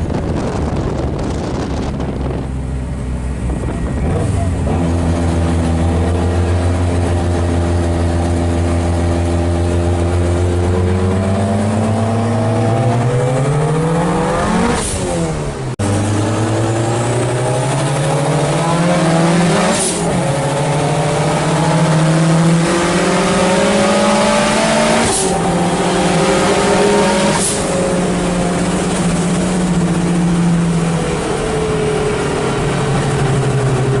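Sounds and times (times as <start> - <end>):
race car engine accelerating: 0.0 - 34.0.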